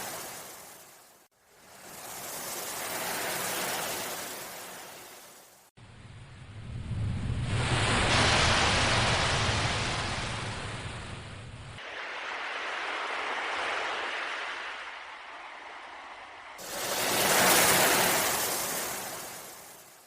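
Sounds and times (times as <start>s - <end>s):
ocean waves breaking: 0.0s - 1.1s, 7.3s - 20.0s.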